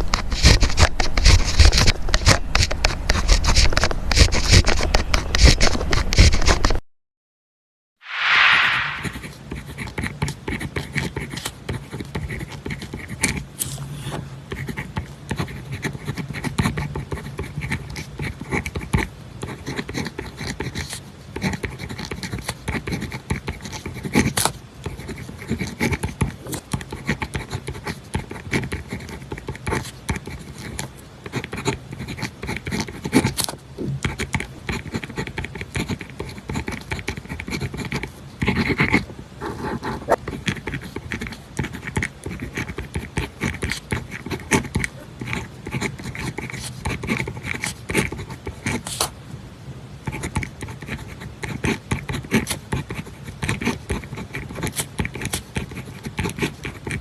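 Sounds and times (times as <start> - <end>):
pen scratching on paper: 0.0 - 6.8, 8.4 - 13.4, 14.5 - 49.1, 50.0 - 57.0.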